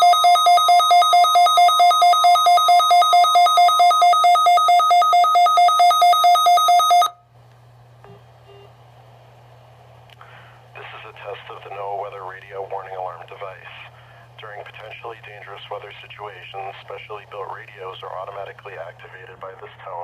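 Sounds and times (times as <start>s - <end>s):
rapid two-tone beeping: 0.0s - 7.1s
steady warning alarm tone: 0.0s - 7.2s.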